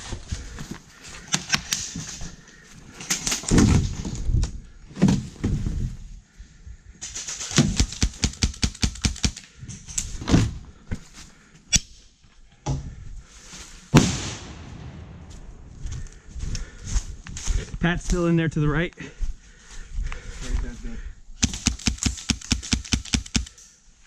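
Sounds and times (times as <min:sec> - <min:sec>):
airsoft guns firing: 0:07.2 - 0:09.4, 0:14.0 - 0:15.6, 0:21.4 - 0:23.6.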